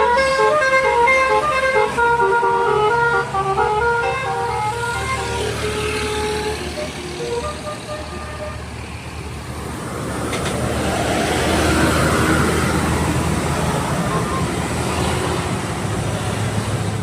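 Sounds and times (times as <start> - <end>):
bus musical horn tune: 0.0 - 8.8
bus engine drone: 0.0 - 17.0
road noise: 0.0 - 17.0.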